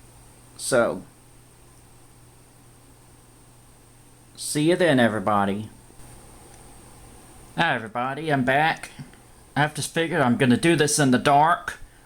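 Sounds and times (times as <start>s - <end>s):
faint steady hiss: 0.0s - 12.0s.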